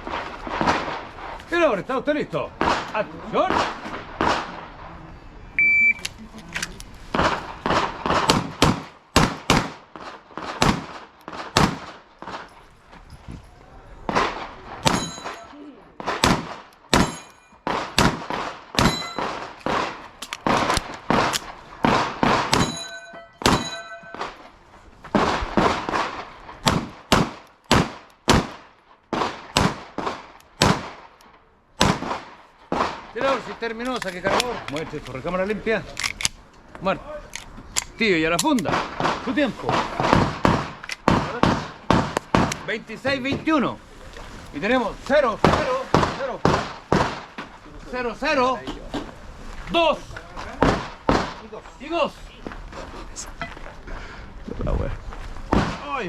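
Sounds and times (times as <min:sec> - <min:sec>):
shot timer beep: 0:05.6 - 0:06.1
pistol shots: 0:07.2 - 0:12.5, 0:14.1 - 0:24.4, 0:25.1 - 0:31.2, 0:31.8 - 0:33.4, 0:38.4 - 0:43.3, 0:44.6 - 0:47.5, 0:50.6 - 0:51.5, 0:55.5 - 0:55.9
steel targets ringing: 0:14.9 - 0:15.6, 0:17.0 - 0:17.6, 0:18.8 - 0:19.4, 0:22.5 - 0:24.4.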